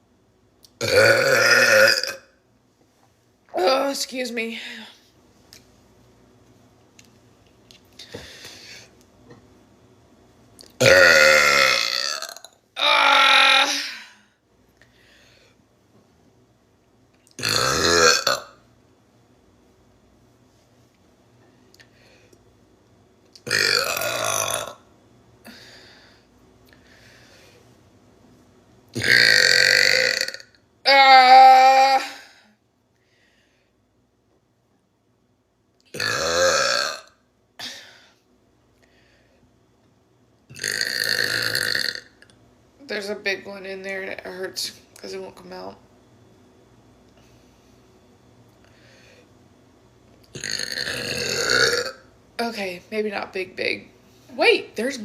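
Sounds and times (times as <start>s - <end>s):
person burping loudly: 0.8s - 2.4s, 10.8s - 13.8s, 17.4s - 18.6s, 23.4s - 24.8s, 29.0s - 30.6s, 35.9s - 37.8s, 40.5s - 42.2s, 50.3s - 52.0s
faint breath: 8.0s - 9.0s, 14.8s - 15.6s, 21.8s - 22.4s, 25.4s - 27.7s, 32.3s - 33.8s, 38.8s - 39.5s, 48.6s - 49.4s.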